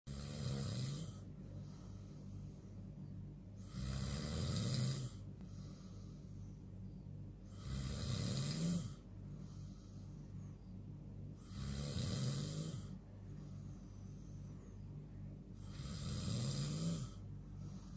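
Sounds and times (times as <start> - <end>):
person snoring: 0.1 - 2.2, 3.6 - 6.2, 7.5 - 10.1, 11.4 - 13.8, 15.6 - 17.9
steady low hum: 0.1 - 17.9.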